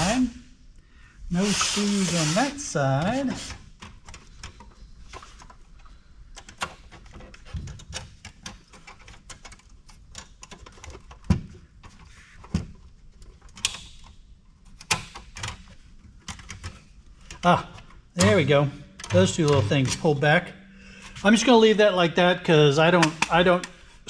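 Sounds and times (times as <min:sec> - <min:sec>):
plastic and metal clicks and rattles: 0:03.8 - 0:18.4.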